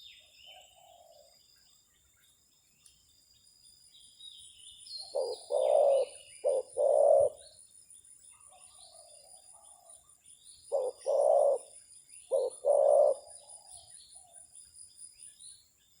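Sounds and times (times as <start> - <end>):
small birds chirping: 0.0 - 16.0
dove cooing: 5.1 - 7.4, 10.7 - 14.3.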